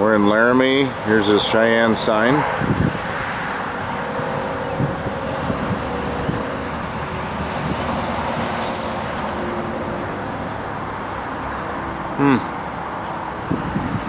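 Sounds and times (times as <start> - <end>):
vehicle tyre and engine rumble: 0.0 - 14.0.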